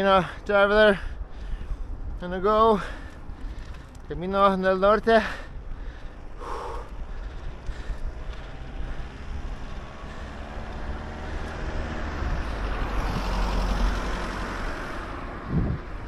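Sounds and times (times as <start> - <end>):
wind rumble on microphone: 0.7 - 4.4, 5.5 - 16.0
motor vehicle passing: 5.2 - 16.0.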